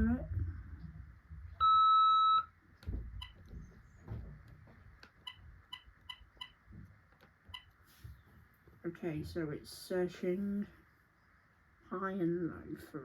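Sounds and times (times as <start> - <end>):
cordless phone beep: 1.6 - 2.5.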